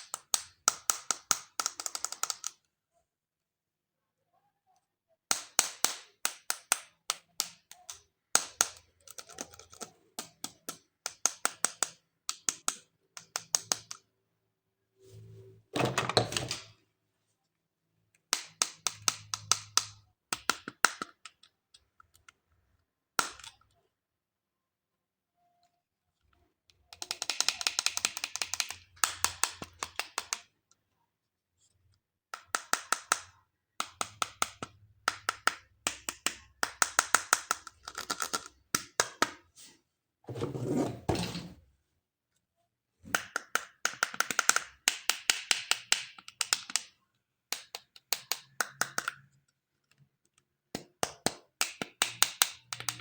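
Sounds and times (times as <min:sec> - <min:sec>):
plastic toys clicking and tapping: 0:00.0 - 0:02.7, 0:05.3 - 0:14.1, 0:18.1 - 0:23.9, 0:26.2 - 0:30.8, 0:31.6 - 0:39.4, 0:43.1 - 0:53.0.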